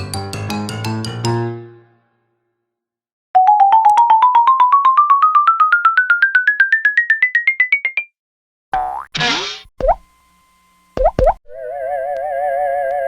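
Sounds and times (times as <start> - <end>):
rising cartoon notes: 9.2 - 10.0.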